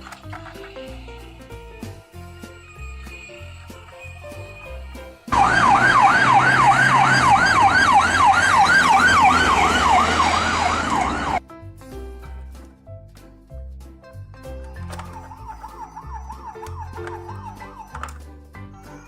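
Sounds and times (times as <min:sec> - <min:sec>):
light background music: 0:00.0 - 0:19.0
siren wailing: 0:05.3 - 0:11.4.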